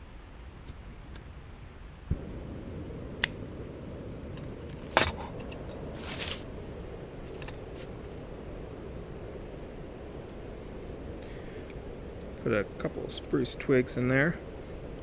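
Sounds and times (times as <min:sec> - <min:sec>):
stove burner roaring: 0:01.1 - 0:15.0
brief rustle: 0:05.0 - 0:06.4.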